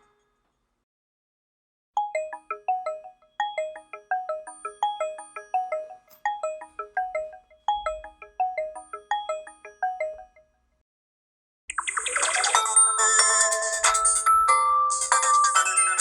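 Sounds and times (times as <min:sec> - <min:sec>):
phone ringtone melody: 0:02.0 - 0:10.5, 0:12.0 - 0:16.0.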